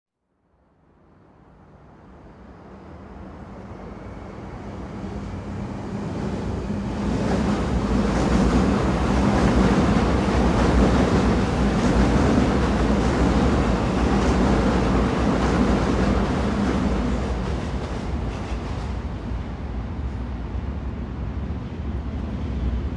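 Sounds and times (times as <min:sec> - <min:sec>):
train rumbling on rails: 0:00.9 - 0:22.9.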